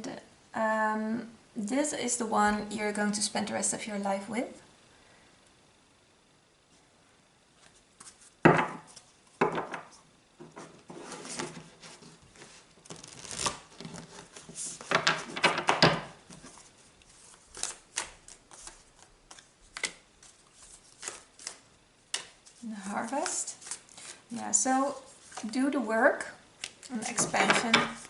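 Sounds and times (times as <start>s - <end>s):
cards rustling and riffling: 11.1s - 15.4s, 16.3s - 24.3s.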